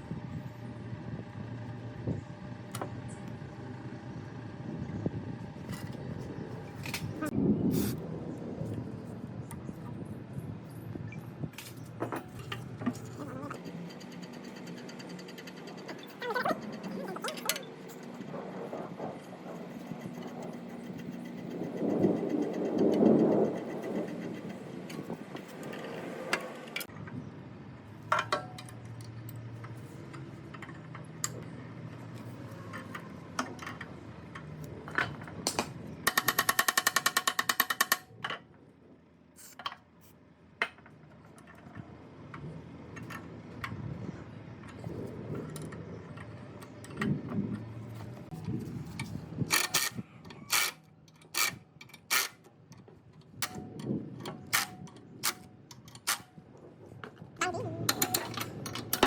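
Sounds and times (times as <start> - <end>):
metal parts clinking and knocking: 32.2 - 38.4, 44.7 - 56.3, 57.0 - 59.0
power tool rattling: 35.0 - 38.2, 47.0 - 56.3.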